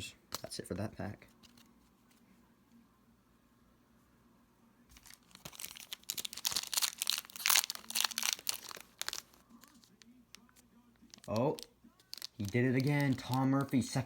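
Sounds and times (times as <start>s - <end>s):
wrapper crinkling and tearing: 4.9s - 14.0s.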